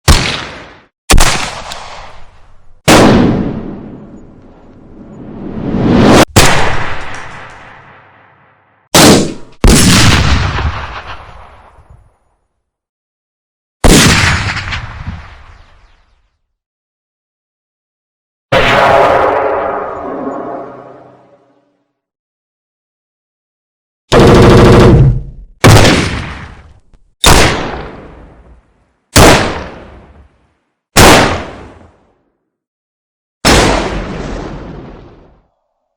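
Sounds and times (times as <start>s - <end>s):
echoing gunshots: 0.1s - 4.3s, 6.3s - 8.3s, 9.0s - 11.8s, 13.8s - 15.7s, 24.1s - 26.6s, 27.2s - 28.4s, 29.2s - 30.1s, 31.0s - 31.8s
rising swell: 4.9s - 6.2s.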